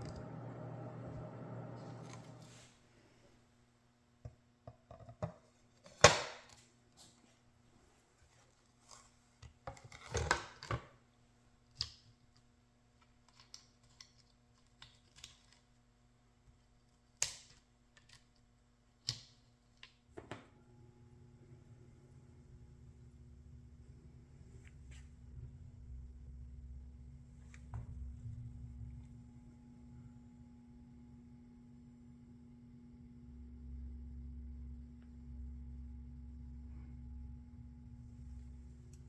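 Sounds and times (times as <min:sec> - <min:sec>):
faint hum: 0:00.0 - 0:04.7, 0:20.0 - 0:39.0.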